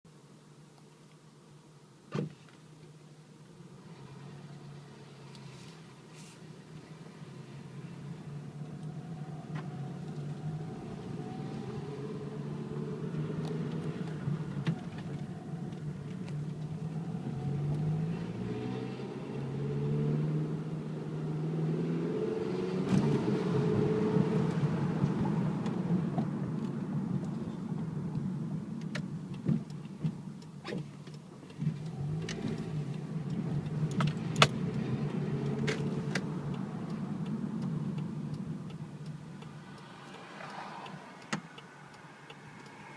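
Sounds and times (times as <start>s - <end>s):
car engine revving: 7.2s - 28.5s, 31.6s - 42.9s.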